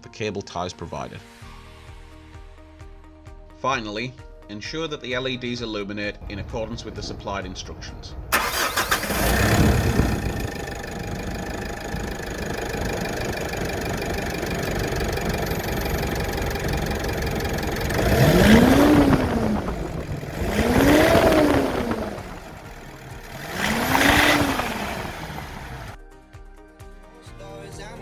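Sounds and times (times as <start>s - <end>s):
diesel engine idling and revving: 6.2s - 26.0s.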